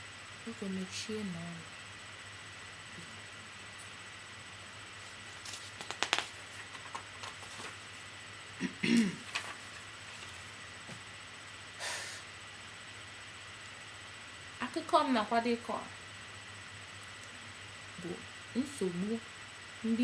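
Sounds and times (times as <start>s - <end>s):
person clearing throat: 8.6s - 9.3s.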